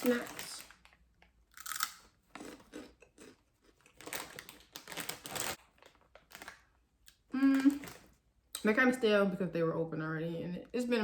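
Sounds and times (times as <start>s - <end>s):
snack bag crinkling: 0.0s - 8.1s
person crunching snacks: 1.5s - 8.1s.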